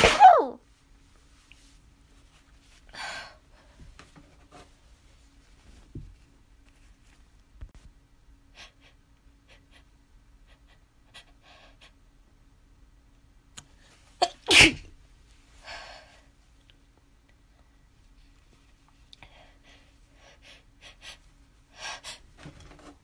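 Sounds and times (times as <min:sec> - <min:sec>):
person sneezing: 0:00.0 - 0:00.6, 0:14.2 - 0:14.9
breaths: 0:02.9 - 0:04.0, 0:15.6 - 0:16.3, 0:19.2 - 0:22.3.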